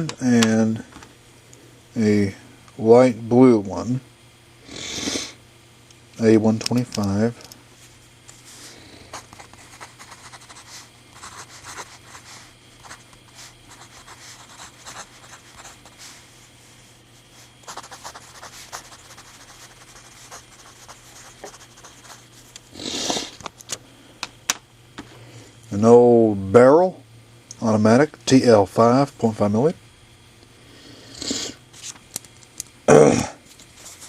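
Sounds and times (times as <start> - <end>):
low steady hum: 0.0 - 34.0.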